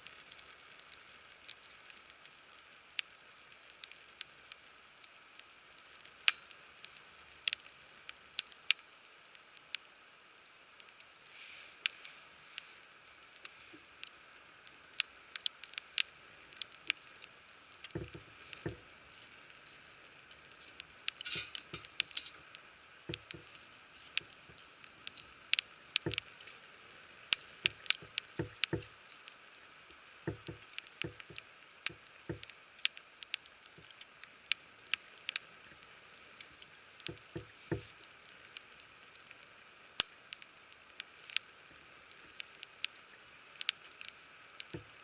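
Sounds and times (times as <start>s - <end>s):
campfire crackling and popping: 0.0s - 45.0s
faint steady hiss: 0.0s - 45.0s
dull knocks: 18.0s - 18.8s.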